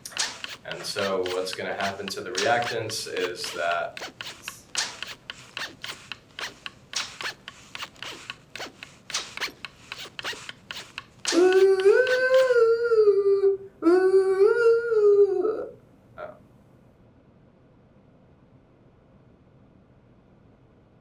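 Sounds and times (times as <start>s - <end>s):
scratchy strokes: 0.0s - 12.6s
person singing long notes: 11.3s - 15.7s.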